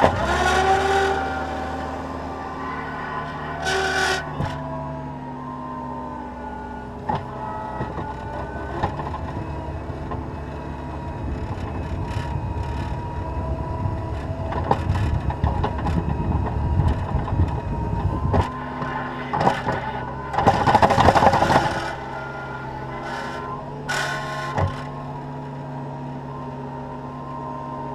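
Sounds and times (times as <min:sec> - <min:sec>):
loader diesel engine running: 0:00.0 - 0:27.9
knocks and clanks: 0:14.2 - 0:22.1, 0:23.0 - 0:25.0.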